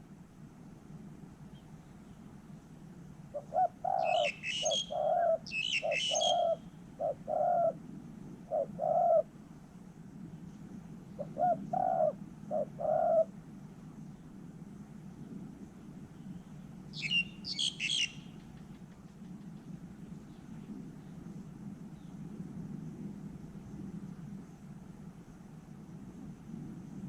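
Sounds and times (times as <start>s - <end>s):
songbird chirping: 1.4s - 9.2s, 16.1s - 21.3s
dove cooing: 3.3s - 7.8s, 8.4s - 9.3s, 11.2s - 13.4s.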